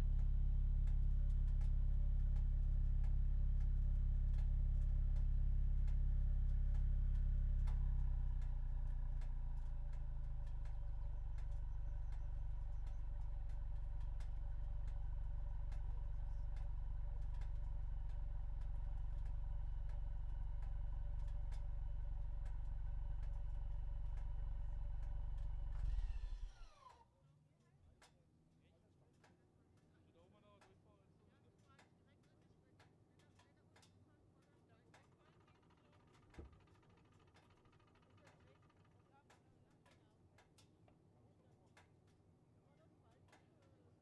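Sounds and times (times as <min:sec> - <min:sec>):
car engine and exhaust running: 0:00.0 - 0:26.9.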